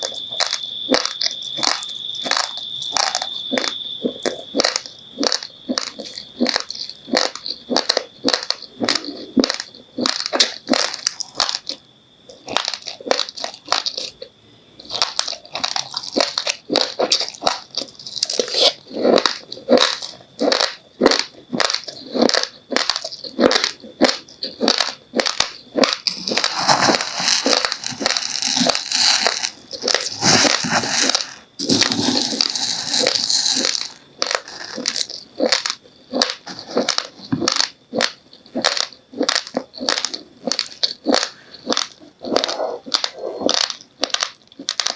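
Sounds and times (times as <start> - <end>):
chewing crunchy rice grains: 0.0 - 44.9.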